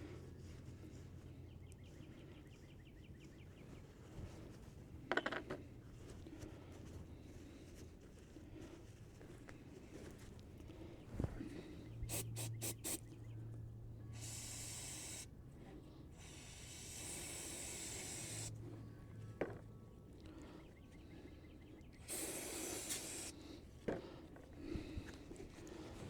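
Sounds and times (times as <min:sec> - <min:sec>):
pressurised spray hissing: 0:12.1 - 0:13.1, 0:14.2 - 0:15.3, 0:16.2 - 0:18.6, 0:22.0 - 0:23.4.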